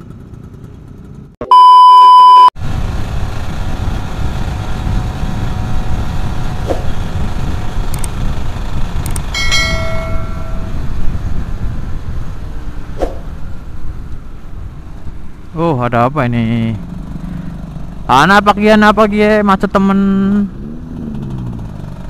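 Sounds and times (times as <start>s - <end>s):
two-stroke motorcycle engine: 0.0s - 1.4s, 2.6s - 12.4s, 16.4s - 22.0s
wind on microphone: 2.6s - 15.2s.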